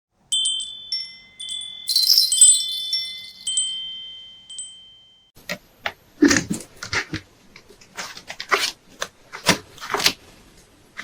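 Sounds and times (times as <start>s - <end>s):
chimes ringing: 0.3s - 5.3s.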